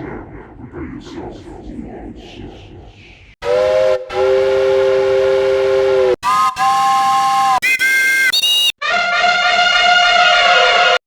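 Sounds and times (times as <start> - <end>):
train horn blasts: 3.5 - 7.6.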